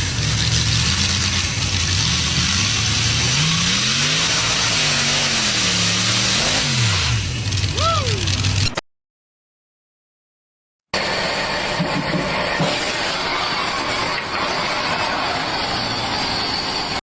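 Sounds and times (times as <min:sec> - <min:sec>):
engine running loud: 0:00.0 - 0:08.8.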